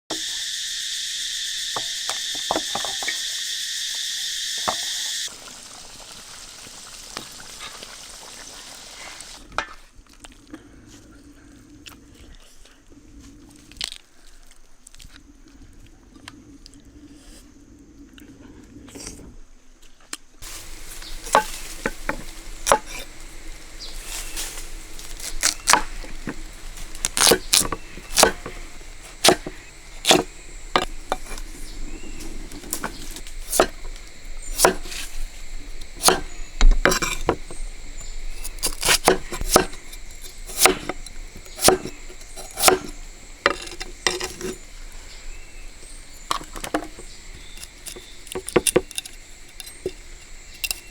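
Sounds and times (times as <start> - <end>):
high insect drone: 0.1 - 9.4, 20.4 - 50.9
cooking utensils knocking on wood: 20.5 - 24.0, 25.7 - 31.6, 32.2 - 38.0, 38.9 - 44.6.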